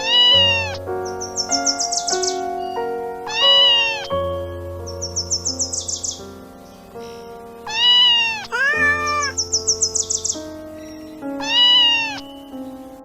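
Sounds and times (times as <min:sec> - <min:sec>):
cat meowing: 0:00.0 - 0:00.8, 0:07.7 - 0:09.4, 0:11.4 - 0:12.2
background music sustained notes: 0:00.0 - 0:08.5, 0:09.3 - 0:13.0.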